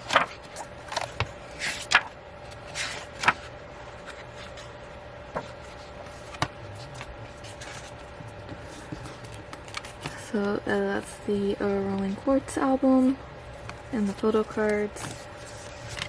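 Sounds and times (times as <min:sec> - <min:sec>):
paper rustling and tapping: 0:00.0 - 0:04.7, 0:05.3 - 0:10.6, 0:13.6 - 0:16.0
faint steady hum: 0:00.0 - 0:16.0.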